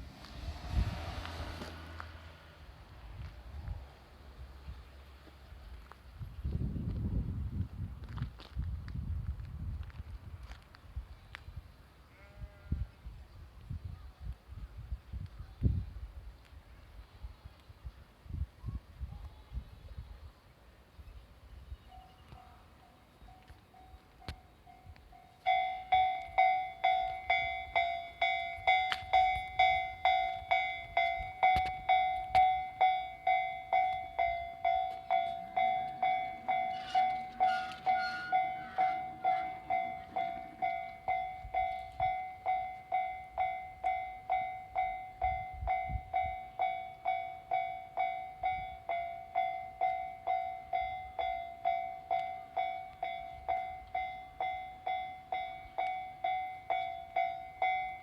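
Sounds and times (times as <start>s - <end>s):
level crossing bell ringing: 24.7s - 58.0s.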